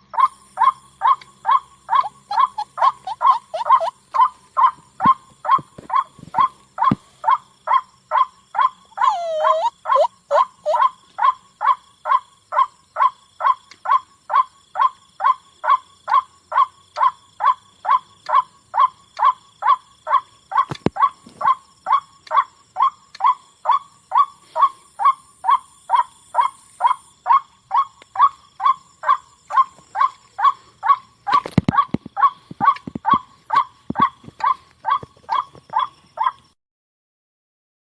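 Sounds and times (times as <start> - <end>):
lower gliding bird call: 0.1 - 6.6, 8.6 - 11.0
waterhen calling: 0.2 - 7.0, 9.0 - 10.9.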